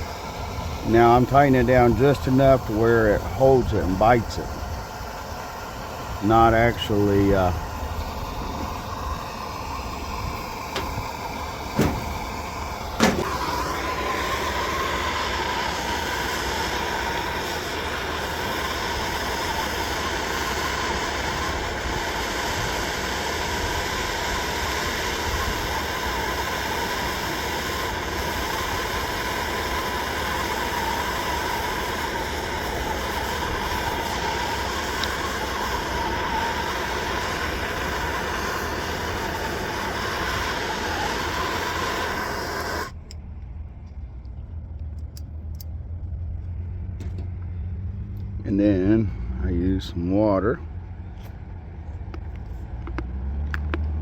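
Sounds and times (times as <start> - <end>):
gas torch hissing: 0.0 - 43.2
gas torch igniter clicks: 0.0 - 43.3.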